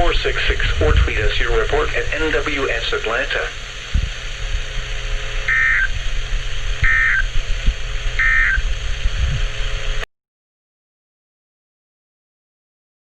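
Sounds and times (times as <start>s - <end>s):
radio static and hum: 0.0s - 10.0s
screechy digital tone bursts: 5.5s - 6.0s, 6.8s - 7.3s, 8.2s - 8.6s.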